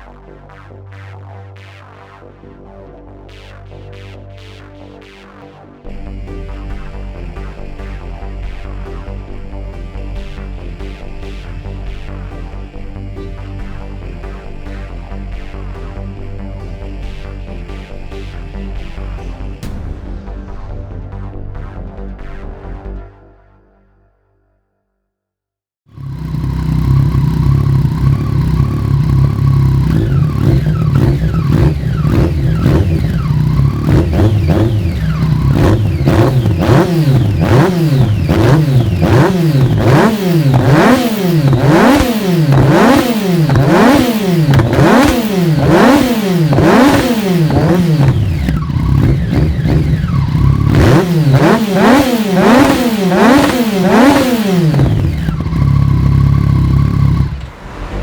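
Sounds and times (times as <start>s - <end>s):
motorcycle engine revving: 25.9s - 58.0s.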